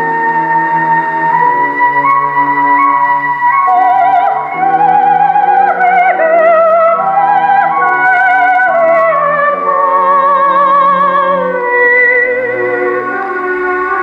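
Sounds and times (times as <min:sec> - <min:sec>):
flute line: 0:00.0 - 0:14.0
held orchestral notes: 0:00.0 - 0:14.0
soprano singing with vibrato: 0:00.0 - 0:14.0.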